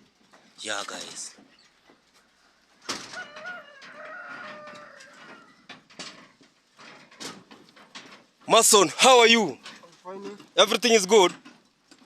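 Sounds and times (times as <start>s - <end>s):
rooster crowing: 2.8s - 5.6s.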